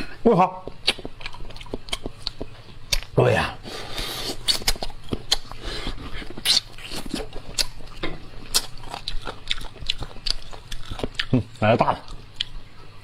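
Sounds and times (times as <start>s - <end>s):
lip smacks and chewing: 0.6s - 3.2s, 4.0s - 11.4s, 12.0s - 12.6s
wet slurping and sucking: 3.6s - 7.2s.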